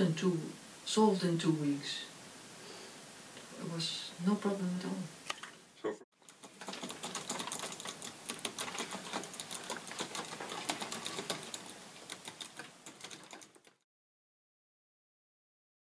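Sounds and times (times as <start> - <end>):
fast typing on keyboard: 6.2 - 13.8.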